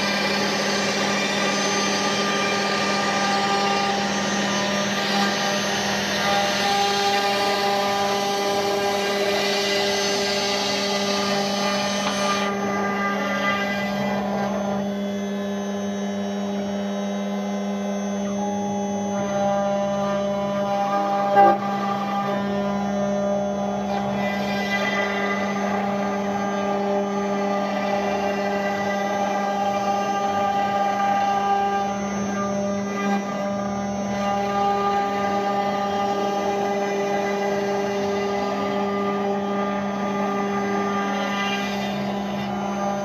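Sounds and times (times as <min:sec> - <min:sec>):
hissing wood cutting: 0:00.0 - 0:13.4
router spindle whine: 0:00.0 - 0:43.0.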